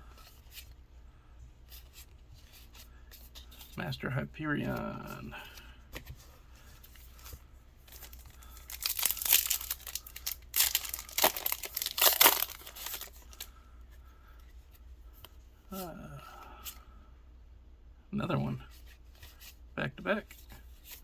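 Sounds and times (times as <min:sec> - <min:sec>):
foil rustling: 0:07.8 - 0:13.5
foil card pack tearing: 0:08.0 - 0:13.5.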